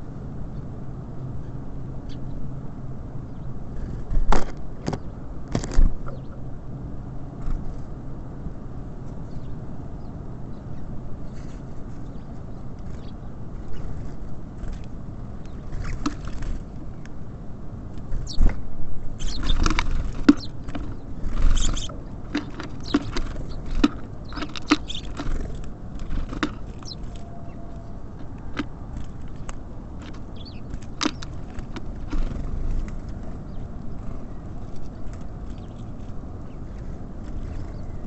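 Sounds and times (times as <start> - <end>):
steady low rumble: 0.0 - 38.0
birds pecking and landing: 11.3 - 17.2, 17.9 - 38.0
bird chirps: 18.1 - 25.6, 26.6 - 28.6, 30.3 - 31.4, 33.3 - 36.7.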